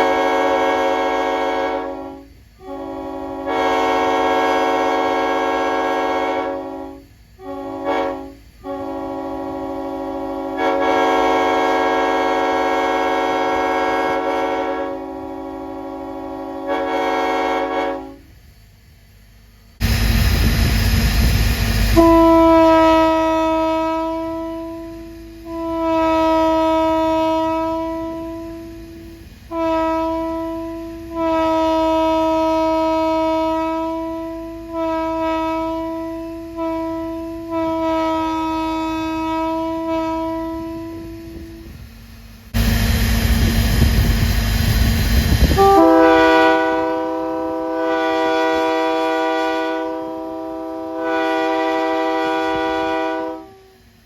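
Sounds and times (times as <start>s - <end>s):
locomotive air horn blasts: 0.0s - 18.4s, 21.8s - 41.8s, 44.9s - 54.0s
loud rushing noise: 19.8s - 22.0s, 42.5s - 45.6s.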